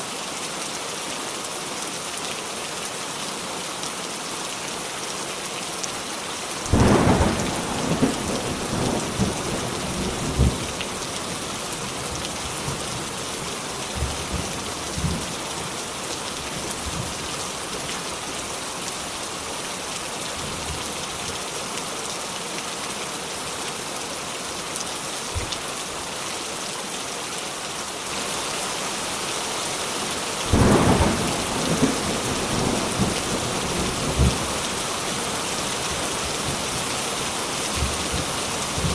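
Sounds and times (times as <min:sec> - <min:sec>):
heavy rain: 0:00.0 - 0:38.9.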